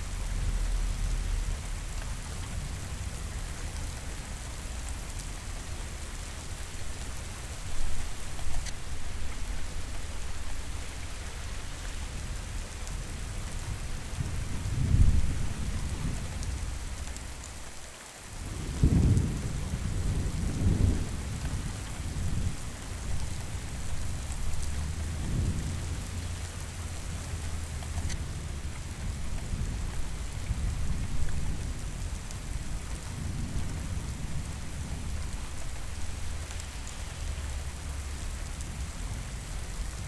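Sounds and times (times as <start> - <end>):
heavy rain hissing: 0.0 - 40.0
thunder rumbling: 13.2 - 16.8, 18.5 - 40.0.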